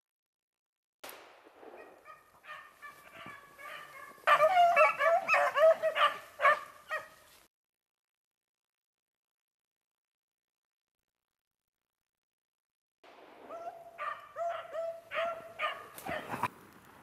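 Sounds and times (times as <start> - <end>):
hounds baying: 1.8 - 7.4, 13.5 - 16.5.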